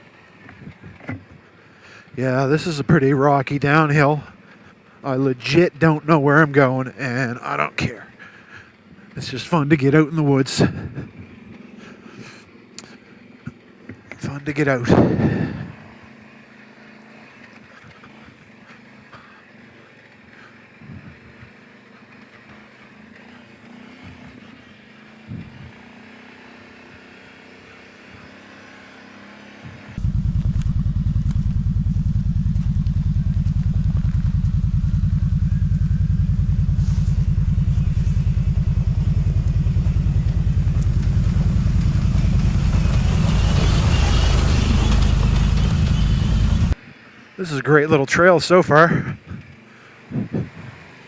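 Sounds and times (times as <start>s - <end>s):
atv engine running: 10.5s - 46.8s.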